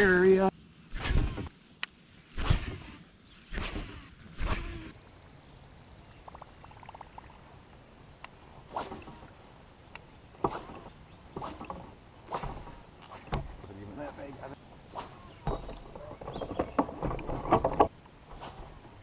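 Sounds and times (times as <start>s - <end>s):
water sloshing around kayak: 8.4s - 19.0s.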